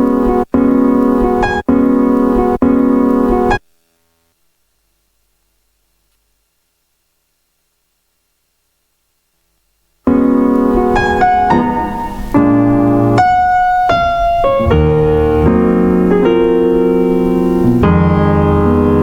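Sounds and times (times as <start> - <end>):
sampled piano chords: 0.0 - 3.6, 10.0 - 19.0.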